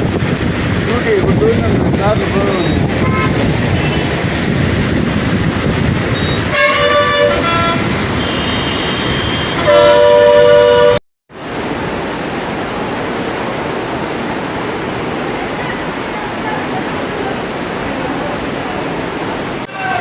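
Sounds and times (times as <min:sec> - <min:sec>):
rushing water: 0:00.0 - 0:19.7
vehicle horns honking: 0:02.6 - 0:04.0, 0:06.2 - 0:11.0.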